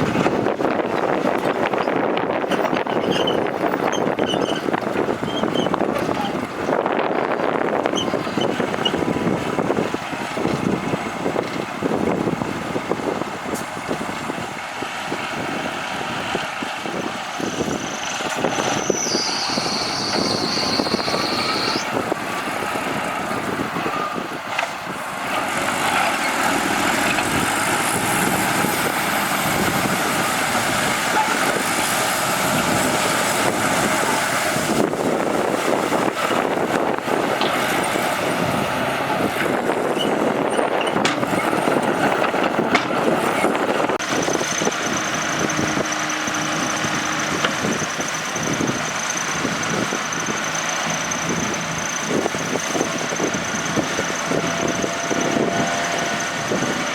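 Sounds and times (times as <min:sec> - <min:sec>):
heavy diesel machinery running: 0:00.0 - 0:56.9
high-pitched tone: 0:18.8 - 0:21.9.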